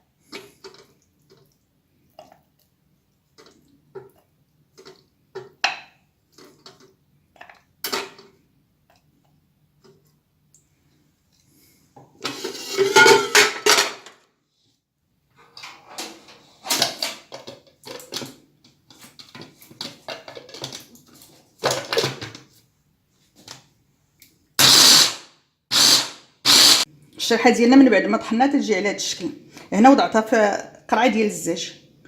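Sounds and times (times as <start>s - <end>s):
electric grinder chopping: 24.6s - 26.8s.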